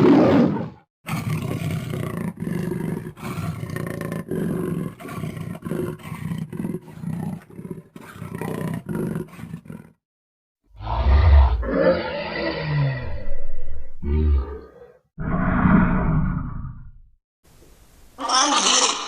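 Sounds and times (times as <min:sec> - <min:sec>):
lion roaring grunts: 0:10.7 - 0:16.9.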